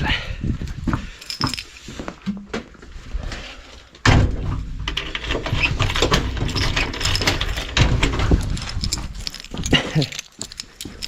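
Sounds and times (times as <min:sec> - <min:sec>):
door slamming shut: 0:04.0 - 0:08.3
door lock clicking and rattling: 0:04.1 - 0:11.0.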